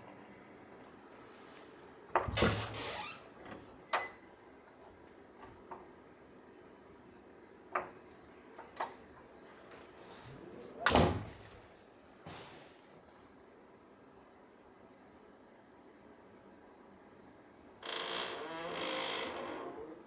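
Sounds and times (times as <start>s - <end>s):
door sliding: 2.2s - 3.7s.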